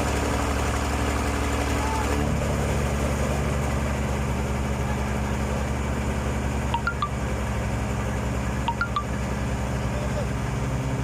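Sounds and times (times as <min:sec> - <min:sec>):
diesel engine idling: 0:00.0 - 0:11.0
short high chirps: 0:06.8 - 0:07.2, 0:08.7 - 0:09.2.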